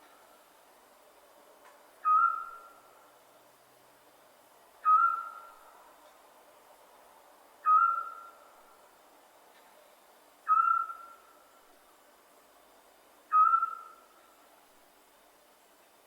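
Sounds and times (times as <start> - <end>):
owl whistled calls: 2.0 - 2.9, 4.8 - 5.6, 7.6 - 8.5, 10.4 - 11.4, 13.3 - 14.1.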